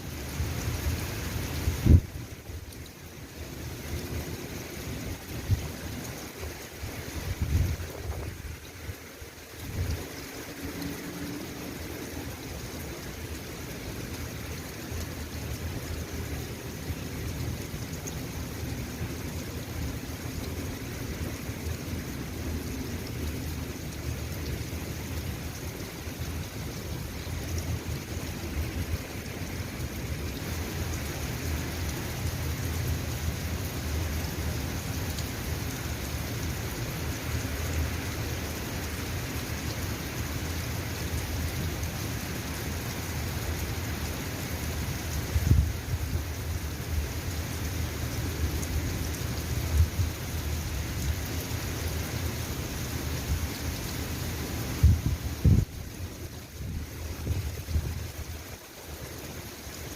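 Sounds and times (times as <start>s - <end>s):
steady rain falling: 0.0s - 59.9s.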